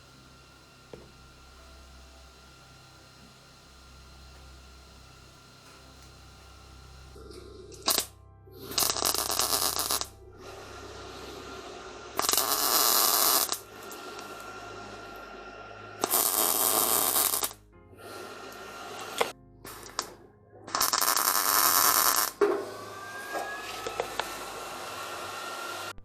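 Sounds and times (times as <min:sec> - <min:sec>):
background music: 0:00.0 - 0:26.0
welding bursts: 0:03.0 - 0:17.6, 0:18.2 - 0:26.0.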